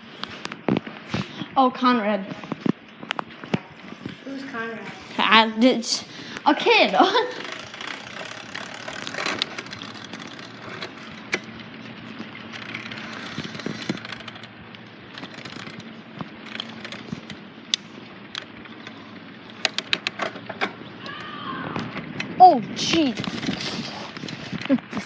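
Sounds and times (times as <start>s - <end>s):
bicycle rolling rumble: 6.0s - 22.4s
run of sharp clicks: 6.3s - 11.6s
rattles and clicks: 6.3s - 21.2s.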